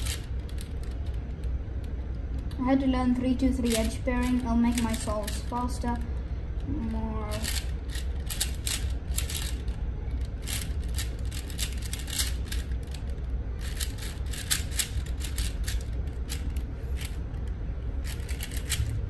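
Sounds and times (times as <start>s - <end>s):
plastic puzzle cube clicking: 7.4s - 13.0s, 13.6s - 17.2s, 18.0s - 18.9s.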